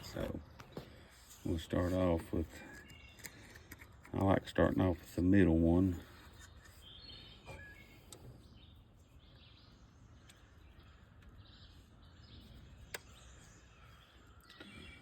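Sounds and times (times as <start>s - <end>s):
faint bird chirps: 5.9s - 15.0s.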